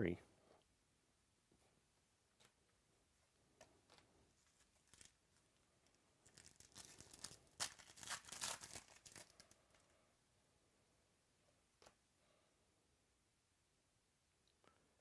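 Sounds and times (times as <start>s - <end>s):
wrapper tearing and crinkling: 4.8s - 5.2s, 6.2s - 9.8s.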